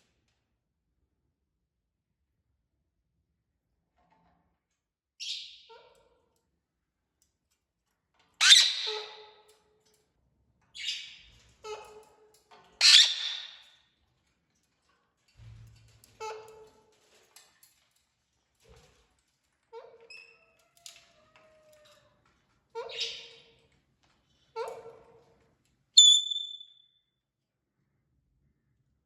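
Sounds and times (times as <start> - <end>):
parrot squawking: 8.4 - 9.2, 12.8 - 13.5, 26.0 - 26.6.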